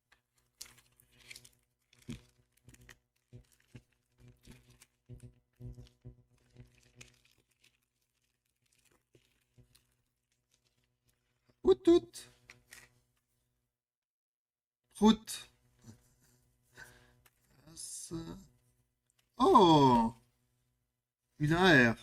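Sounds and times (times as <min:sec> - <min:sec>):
foil pack crinkling: 0:00.0 - 0:11.6, 0:12.3 - 0:13.1.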